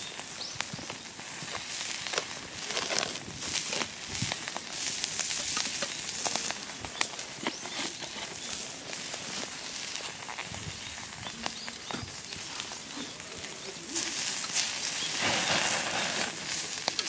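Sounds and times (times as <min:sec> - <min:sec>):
fire hiss: 0:00.0 - 0:17.0
fire pops and snaps: 0:00.0 - 0:17.0
wood fire crackling: 0:00.0 - 0:17.0.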